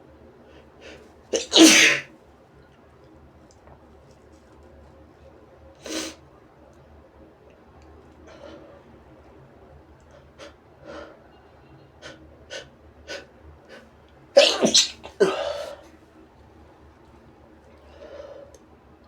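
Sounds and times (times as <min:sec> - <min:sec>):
man sneezing: 0:01.4 - 0:02.1, 0:14.4 - 0:15.8.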